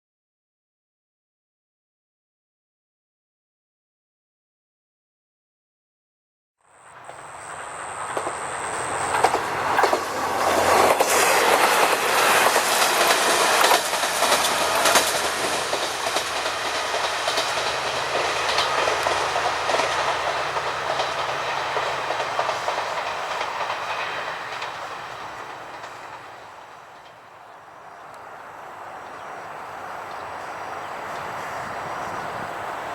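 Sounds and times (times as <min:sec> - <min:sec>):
vehicle passing: 0:06.7 - 0:16.9.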